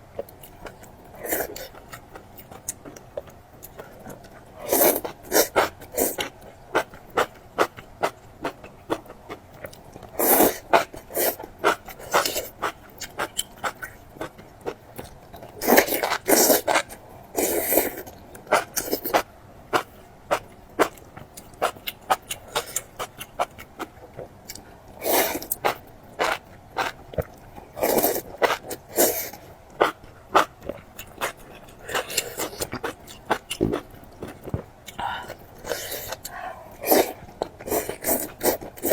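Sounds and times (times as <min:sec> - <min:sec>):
chewing crunches: 0:19.8 - 0:38.9.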